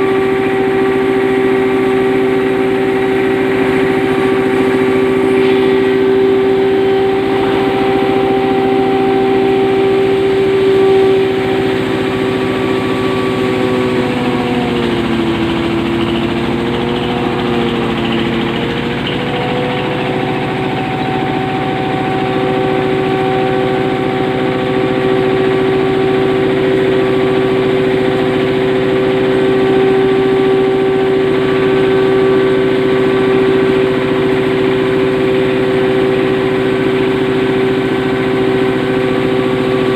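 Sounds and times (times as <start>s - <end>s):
hammer mill grinder humming: 0.0s - 39.9s.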